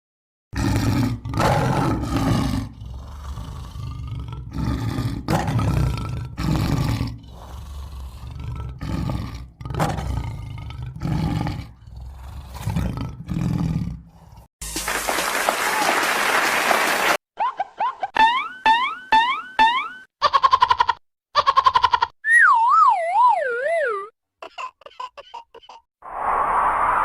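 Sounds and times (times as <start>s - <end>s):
deep rough roars: 0.6s - 14.1s.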